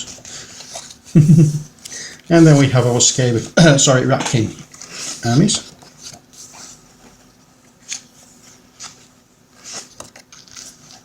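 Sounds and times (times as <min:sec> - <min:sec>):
book pages turning: 0:00.0 - 0:01.1, 0:04.3 - 0:11.0.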